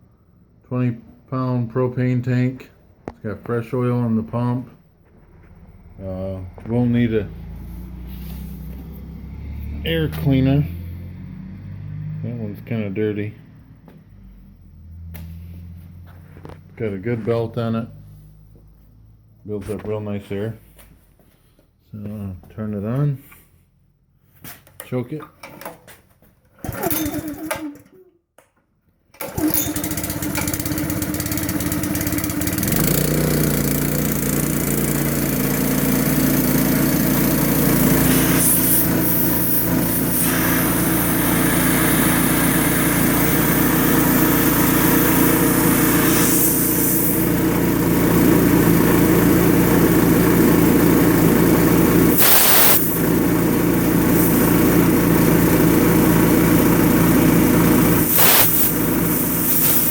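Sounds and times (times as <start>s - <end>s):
air compressor engine running: 5.1s - 11.0s, 26.6s - 27.8s, 29.2s - 59.9s.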